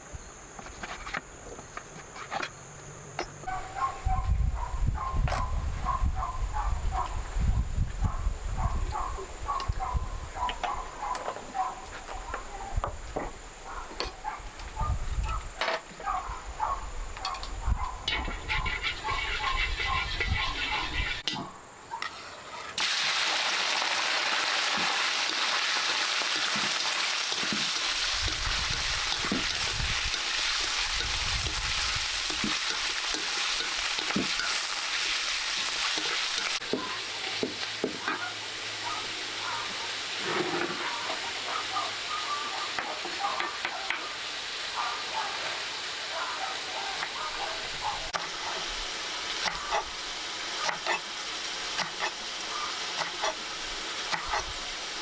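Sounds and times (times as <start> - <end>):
food sizzling in hot oil: 18.3 - 21.2, 22.8 - 55.0.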